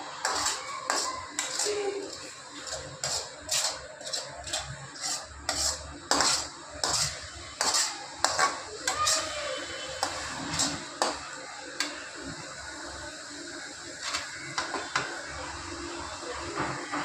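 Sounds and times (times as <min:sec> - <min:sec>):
utensil scraping and knocking pan: 0:00.2 - 0:09.4, 0:10.0 - 0:11.3.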